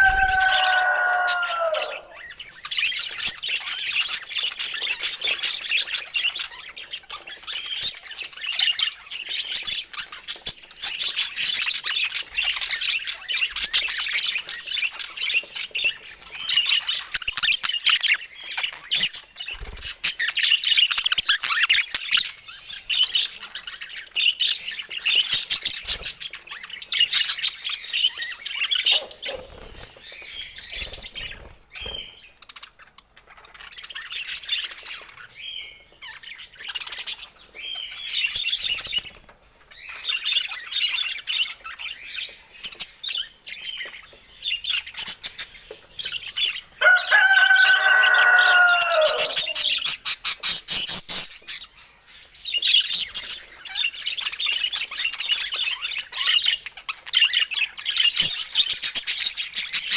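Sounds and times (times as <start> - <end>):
harsh bird call: 0.0 - 2.4, 46.8 - 49.8
budgerigars chattering and chirping: 0.0 - 59.9.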